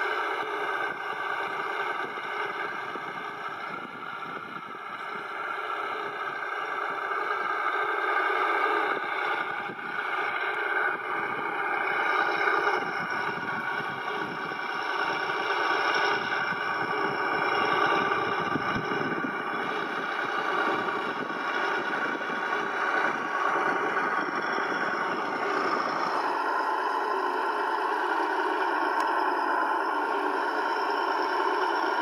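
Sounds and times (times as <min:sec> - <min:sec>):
truck engine sound: 0:00.0 - 0:32.0.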